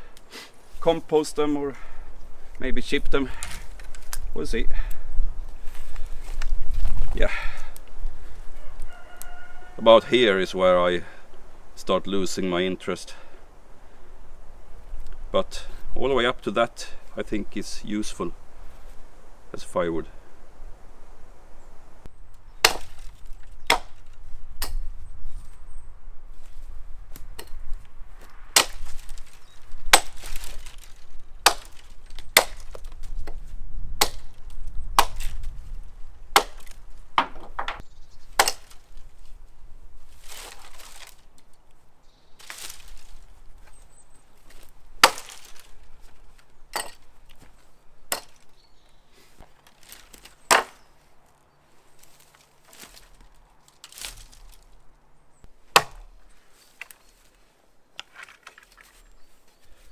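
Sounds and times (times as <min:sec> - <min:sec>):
axe chopping wood: 0:22.6 - 0:24.8, 0:27.1 - 0:27.6, 0:28.2 - 0:35.6, 0:36.3 - 0:37.8, 0:38.4 - 0:39.0, 0:44.5 - 0:45.8, 0:46.7 - 0:48.5, 0:49.9 - 0:50.9, 0:55.6 - 0:56.3.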